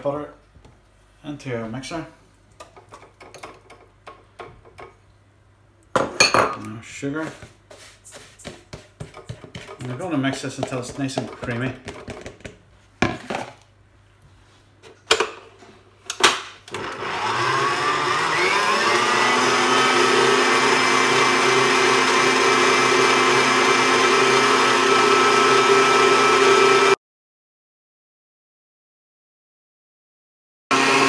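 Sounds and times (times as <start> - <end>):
electric mixer motor whining: 16.7 - 27.0, 30.7 - 31.0.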